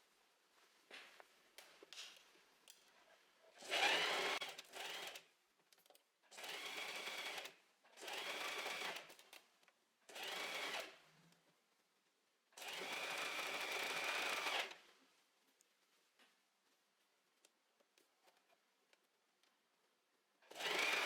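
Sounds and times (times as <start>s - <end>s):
sewing machine stitching: 6.4s - 9.1s, 12.6s - 14.8s, 20.5s - 21.0s.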